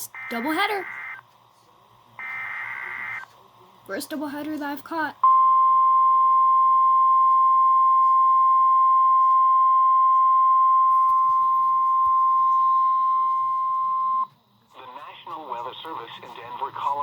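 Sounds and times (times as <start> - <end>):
steady alarm tone: 0.0 - 1.2, 2.2 - 3.2, 5.2 - 14.3.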